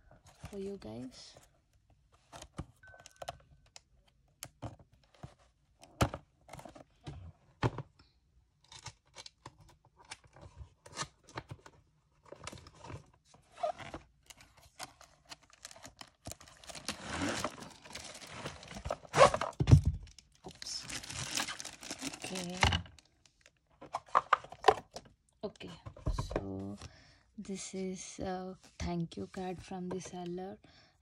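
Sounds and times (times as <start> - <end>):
packaging rustling and crinkling: 8.8 - 25.1
tape and cardboard tearing: 16.6 - 19.6.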